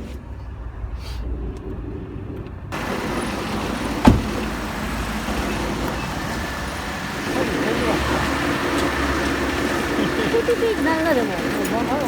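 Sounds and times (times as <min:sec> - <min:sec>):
hissy outdoor vehicle noise: 0:00.0 - 0:12.0
low car rumble: 0:00.0 - 0:12.0
sharp knock: 0:04.0 - 0:04.4.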